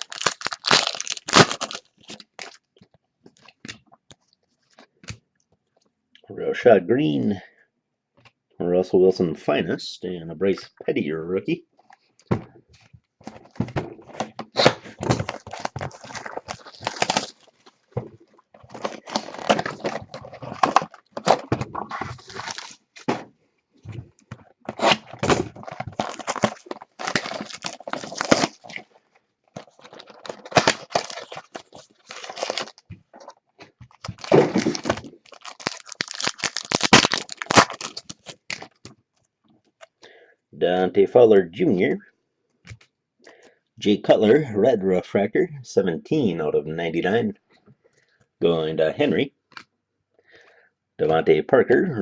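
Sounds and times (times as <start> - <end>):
wrappers tearing and crinkling: 0.0 - 2.7, 14.3 - 23.1, 24.7 - 28.9, 29.6 - 38.8.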